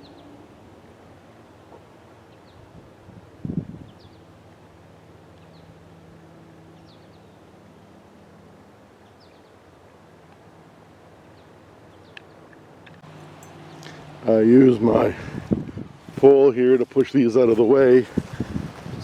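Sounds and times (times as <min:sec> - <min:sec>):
distant vehicle engine hum: 0:00.0 - 0:19.0
high bird chirps: 0:13.4 - 0:14.1.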